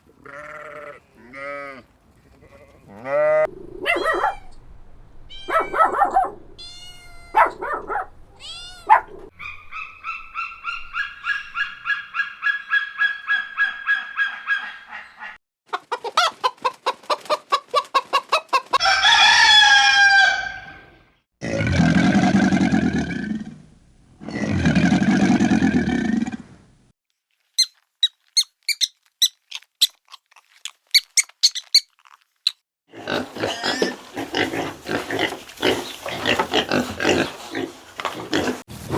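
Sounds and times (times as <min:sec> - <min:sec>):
chickens clucking: 0:14.3 - 0:19.0, 0:33.1 - 0:38.6
cock crowing: 0:15.7 - 0:21.0.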